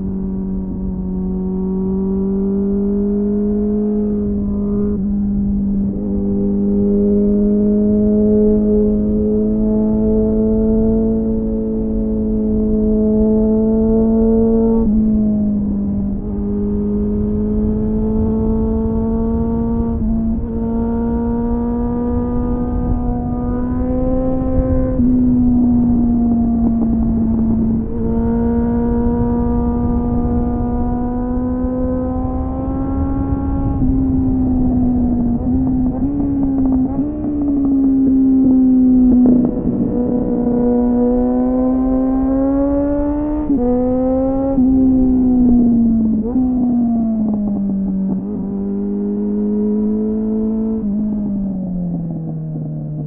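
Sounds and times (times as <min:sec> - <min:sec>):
motorcycle engine running: 0:13.5 - 0:53.0.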